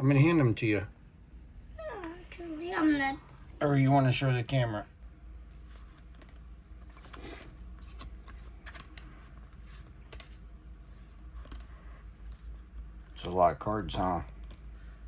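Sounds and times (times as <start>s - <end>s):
trading cards rustling: 5.4s - 15.0s.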